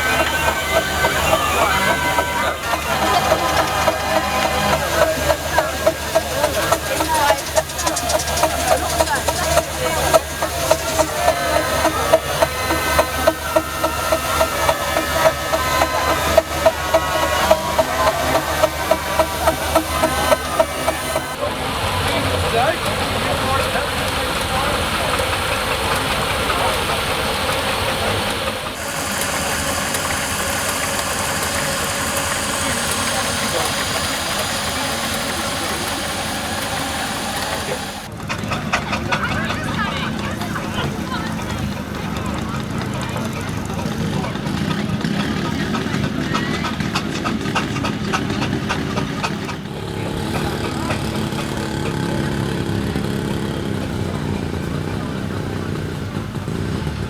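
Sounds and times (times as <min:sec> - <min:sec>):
quick clicks: 0:00.0 - 0:21.4
steam traction engine running: 0:00.0 - 0:57.0.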